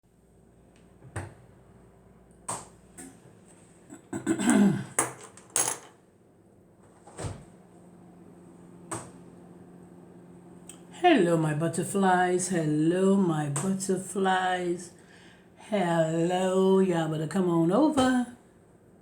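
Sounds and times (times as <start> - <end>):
objects knocking and clattering: 5.0 - 6.0.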